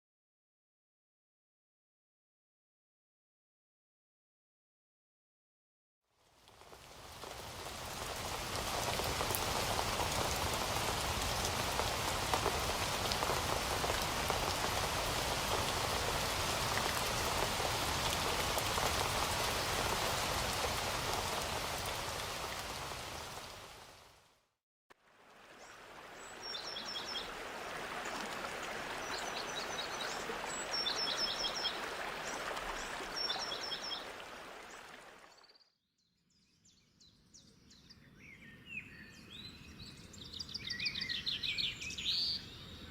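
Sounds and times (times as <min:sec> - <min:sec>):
steady rain: 0:06.2 - 0:24.3, 0:25.0 - 0:35.2.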